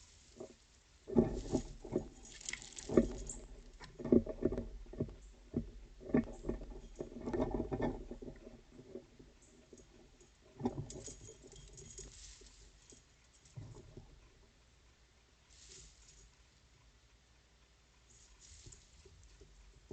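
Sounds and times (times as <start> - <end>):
squirrels jostling bird feeder: 0.0 - 14.0.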